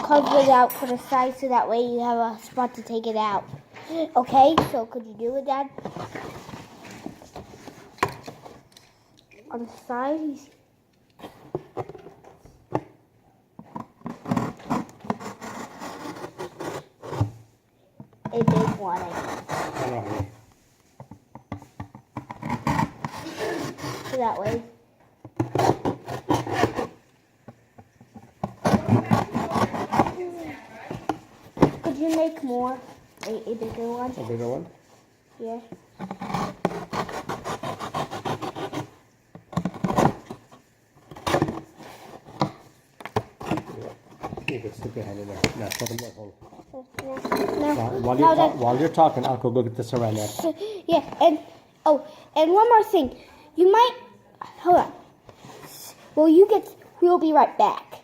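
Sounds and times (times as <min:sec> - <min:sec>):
knife cutting cardboard: 0:14.0 - 0:17.4, 0:18.4 - 0:20.3, 0:22.2 - 0:24.7, 0:25.4 - 0:27.0, 0:28.5 - 0:30.2, 0:36.0 - 0:40.4.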